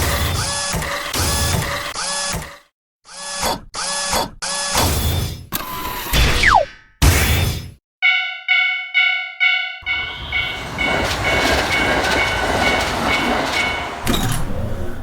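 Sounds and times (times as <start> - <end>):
railroad crossing bell ringing: 8.0 - 14.7
passing train rumble: 9.8 - 15.0.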